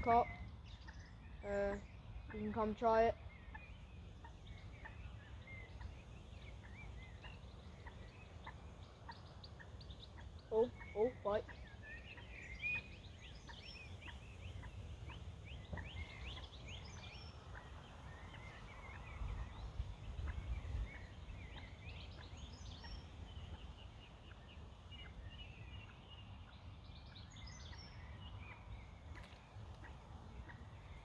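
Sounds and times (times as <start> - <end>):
small birds singing and chirping: 0.0 - 31.0.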